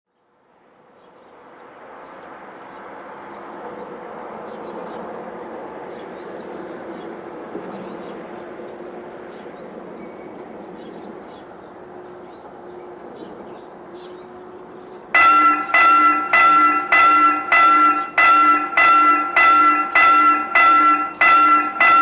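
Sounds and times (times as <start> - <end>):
level crossing warning bell: 15.2 - 22.0.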